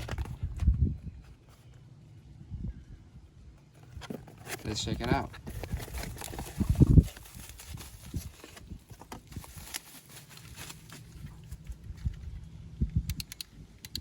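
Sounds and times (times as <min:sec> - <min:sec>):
sharp clicks: 0:13.0 - 0:14.0.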